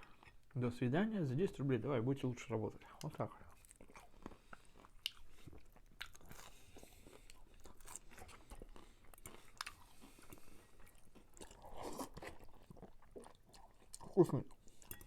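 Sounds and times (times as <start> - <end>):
chewing and mouth clicks: 3.0 - 15.0.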